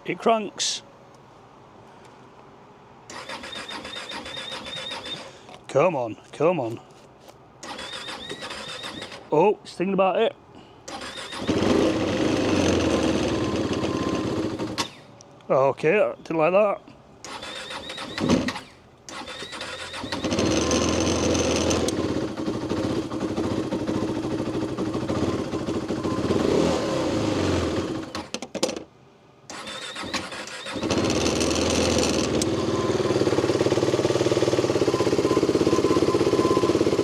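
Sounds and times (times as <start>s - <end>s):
electric starter whine: 10.9s - 15.1s, 17.2s - 22.4s, 29.5s - 37.0s
engine idling steadily: 30.8s - 37.0s
engine running unevenly: 30.8s - 37.0s.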